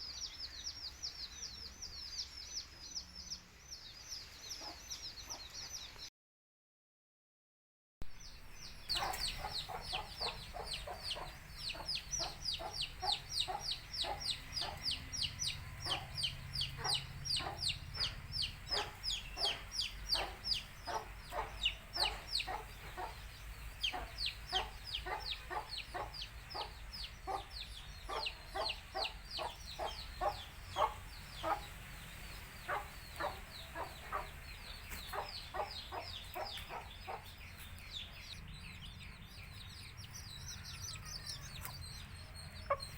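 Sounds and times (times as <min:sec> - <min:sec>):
baby chicks peeping: 0:00.1 - 0:06.0, 0:08.6 - 0:42.9
hen clucking: 0:08.9 - 0:37.5, 0:41.0 - 0:42.9.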